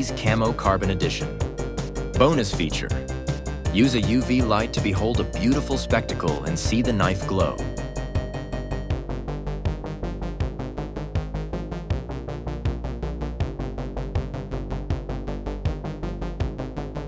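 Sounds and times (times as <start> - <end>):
electronic music with drum machine: 0.0 - 17.0.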